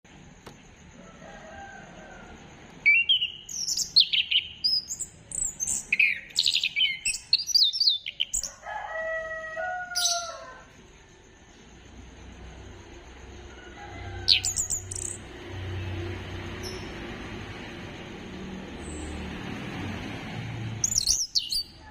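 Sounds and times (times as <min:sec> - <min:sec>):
thrush singing whistles and trills: 0:02.7 - 0:08.6, 0:14.1 - 0:15.8, 0:16.6 - 0:19.2, 0:20.8 - 0:21.9.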